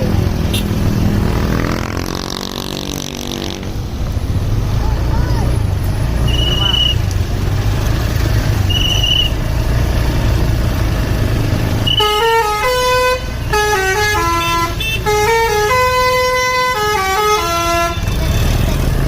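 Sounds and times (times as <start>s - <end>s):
short high beep: 6.2s - 7.0s
bus horn playing a tune: 11.8s - 18.5s.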